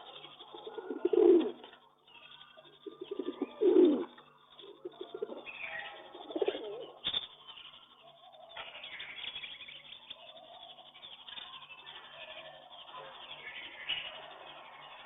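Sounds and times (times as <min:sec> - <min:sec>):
pigeon cooing: 0:00.0 - 0:01.8, 0:02.6 - 0:07.0.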